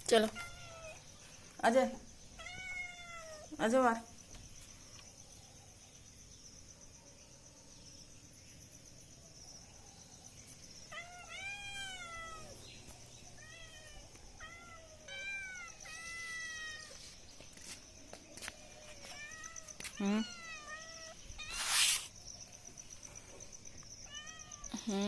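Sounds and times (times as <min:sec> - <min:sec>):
cat meowing: 0:02.4 - 0:03.5, 0:10.9 - 0:12.5, 0:13.4 - 0:17.0, 0:24.1 - 0:24.7.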